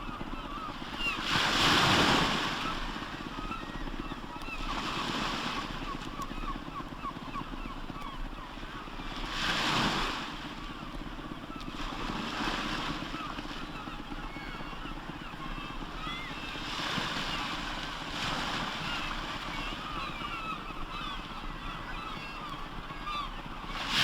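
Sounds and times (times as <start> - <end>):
sea waves breaking on shore: 0.0 - 6.5, 8.9 - 14.6, 15.8 - 21.1, 22.8 - 24.0.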